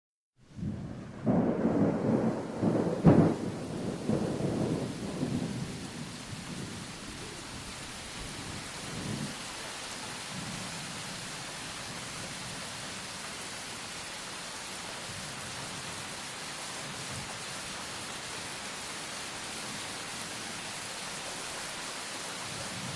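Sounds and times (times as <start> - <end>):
rain hiss: 0.4 - 22.9
rolling thunder rumbles: 0.5 - 9.4
thunderclap: 0.6 - 6.9.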